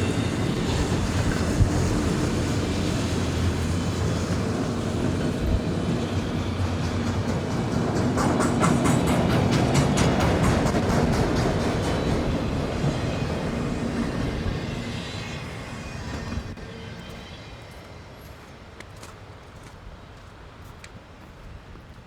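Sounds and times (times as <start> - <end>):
freight train cars rolling: 0.0 - 20.2
wheels clicking over rail joints: 3.7 - 13.0.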